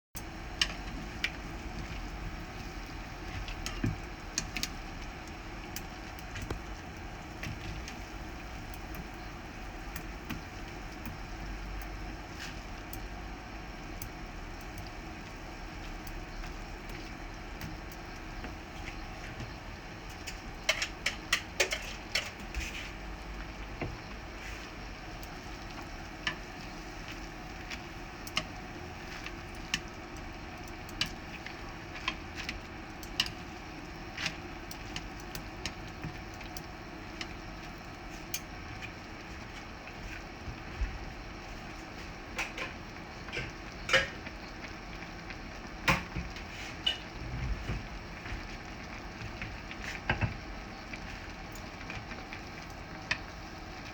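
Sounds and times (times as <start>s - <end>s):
stove hissing: 0.2s - 53.9s
utensils clinking against pot: 20.2s - 22.5s.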